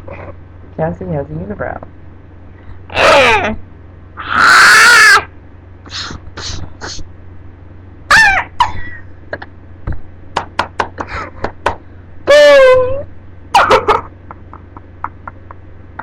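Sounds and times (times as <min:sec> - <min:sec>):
girl shrieking hoarsely: 0:02.9 - 0:03.6, 0:04.2 - 0:05.3
squealing call: 0:02.9 - 0:03.6, 0:04.2 - 0:05.3, 0:08.1 - 0:08.7.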